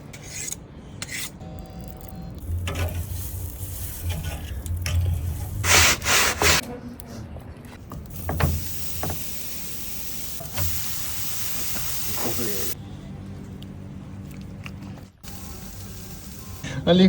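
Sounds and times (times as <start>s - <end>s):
rough scraping and rubbing: 0.1s - 1.4s, 2.4s - 6.6s.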